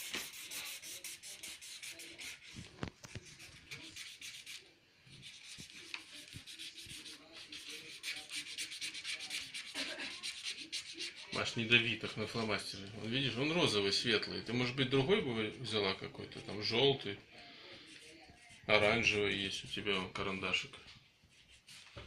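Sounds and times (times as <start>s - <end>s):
marker scribbling on paper: 0.0s - 11.5s, 17.9s - 20.0s, 21.3s - 22.0s.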